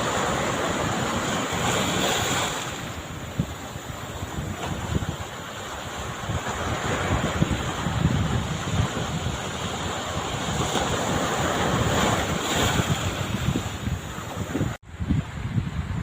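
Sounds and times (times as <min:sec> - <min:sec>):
sea waves washing in: 0:00.0 - 0:16.0
wind buffeting microphone: 0:00.0 - 0:16.0.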